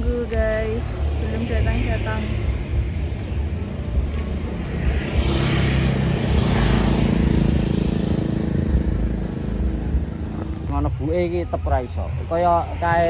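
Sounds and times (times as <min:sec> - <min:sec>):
vehicle engine passing by: 0:00.6 - 0:10.9.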